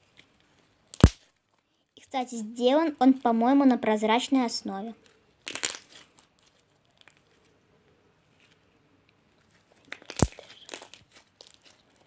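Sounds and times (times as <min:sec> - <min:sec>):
slime clicking and crunching: 0:00.9 - 0:01.3, 0:05.4 - 0:06.3, 0:09.8 - 0:12.0.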